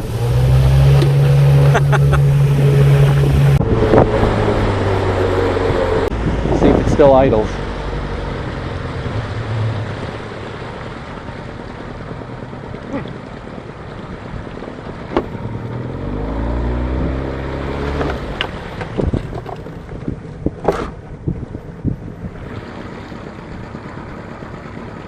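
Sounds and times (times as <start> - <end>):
outboard motor idling unevenly: 10.1 - 15.6, 18.2 - 25.0.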